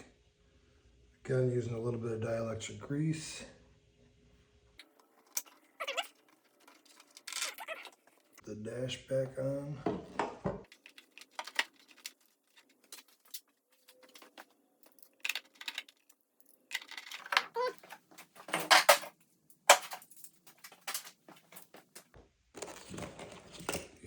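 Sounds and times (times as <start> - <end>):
clicks and rattles of parts handled: 4.8 - 8.4, 10.6 - 24.0
scraping rustles: 4.8 - 8.4, 10.7 - 23.9.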